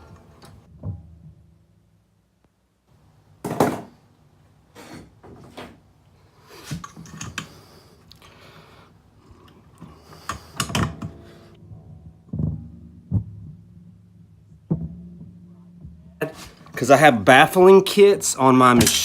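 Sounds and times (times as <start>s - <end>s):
metal scraping: 15.5s - 17.7s
metal parts clunking and knocking: 18.8s - 19.0s.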